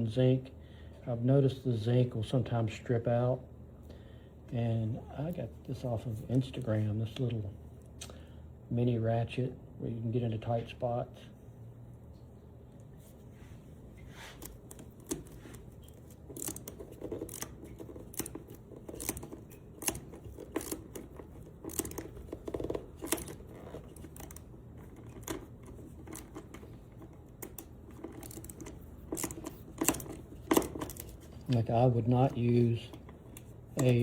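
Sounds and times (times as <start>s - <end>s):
ratchet clicking: 14.4s - 31.6s.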